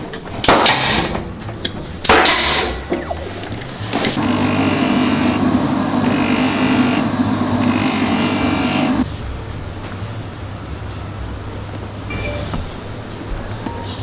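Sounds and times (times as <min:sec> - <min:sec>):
machine motor hum: 0:03.0 - 0:09.1
rasping hiss: 0:03.7 - 0:09.1.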